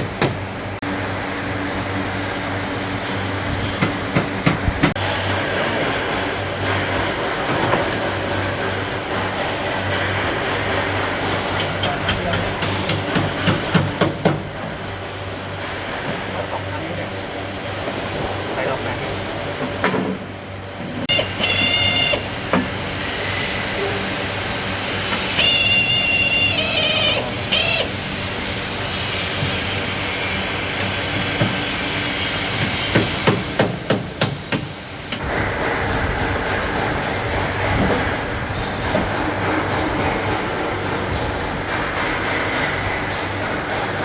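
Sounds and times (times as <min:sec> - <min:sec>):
steady machine hum: 0:34.8 - 0:44.0.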